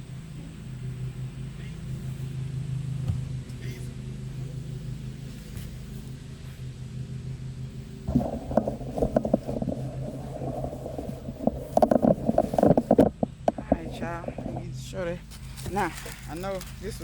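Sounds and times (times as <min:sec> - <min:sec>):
low engine hum: 0:00.0 - 0:17.0
rustling and scraping of plants: 0:05.0 - 0:06.7, 0:07.9 - 0:17.0.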